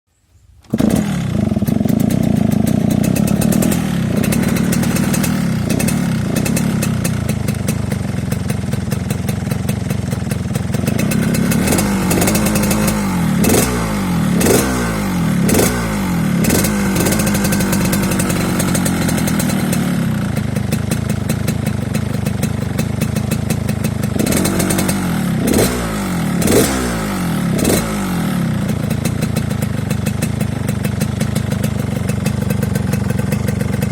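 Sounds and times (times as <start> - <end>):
motorcycle engine rattly idle and revving: 0.6 - 33.9.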